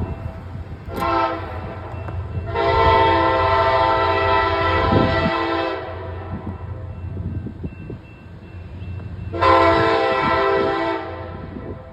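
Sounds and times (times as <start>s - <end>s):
train rumbling: 0.0s - 11.9s
train air horn blasts: 0.9s - 6.9s, 9.3s - 11.9s.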